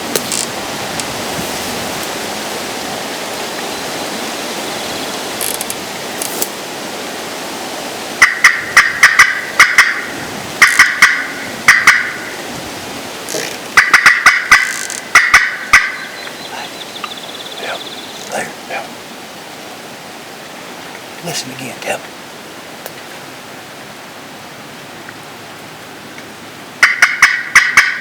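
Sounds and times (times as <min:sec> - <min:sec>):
wind noise: 0:00.0 - 0:17.0
turkey gobbling: 0:08.2 - 0:12.5, 0:13.3 - 0:19.0, 0:26.8 - 0:28.0.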